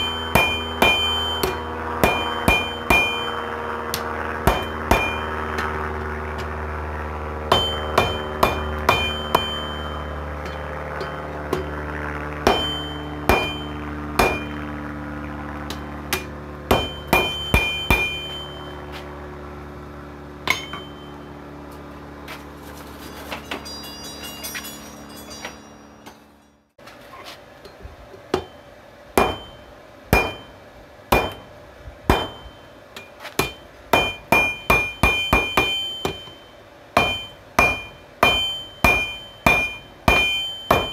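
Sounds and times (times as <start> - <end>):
anvil ringing: 0.0 - 3.6, 4.4 - 5.7, 7.5 - 11.8, 12.4 - 14.7, 16.1 - 18.9, 20.4 - 21.4, 23.1 - 26.7, 28.3 - 31.5, 32.1 - 40.9
hammer striking steel on anvil: 0.0 - 5.8, 7.5 - 11.8, 12.4 - 14.6, 15.6 - 19.0, 20.4 - 21.3, 23.4 - 26.6, 27.6 - 31.5, 32.1 - 40.9
steady low hum: 0.0 - 40.9.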